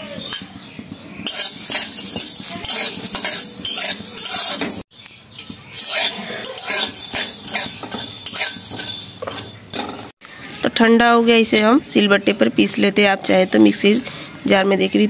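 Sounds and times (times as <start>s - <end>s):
spices rattling: 0.3s - 10.2s
spoon scraping metal pan: 1.2s - 10.1s.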